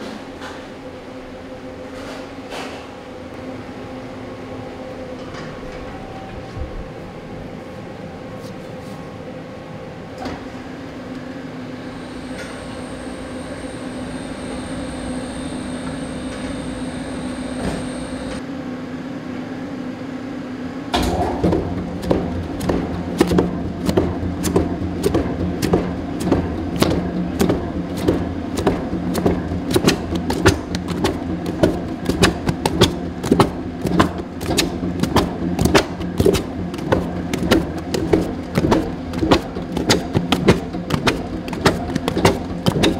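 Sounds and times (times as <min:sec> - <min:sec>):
machine humming: 0:11.3 - 0:18.4, 0:21.0 - 0:42.9
machine clattering and knocking: 0:21.0 - 0:42.9.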